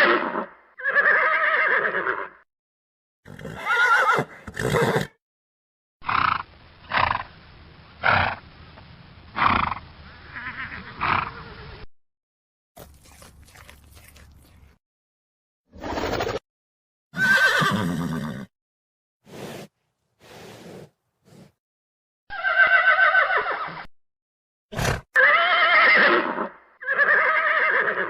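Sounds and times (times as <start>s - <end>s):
horse whinnying: 0.0s - 2.4s, 3.3s - 5.2s, 17.2s - 18.5s, 22.3s - 23.9s, 24.8s - 28.0s.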